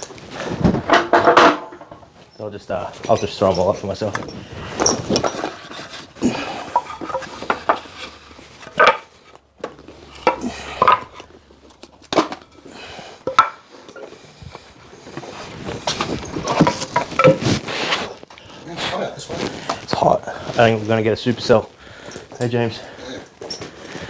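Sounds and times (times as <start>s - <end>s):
timber pieces knocking and clattering: 0.0s - 2.1s, 3.0s - 14.2s, 15.1s - 17.6s
rustling and scraping: 0.0s - 24.0s.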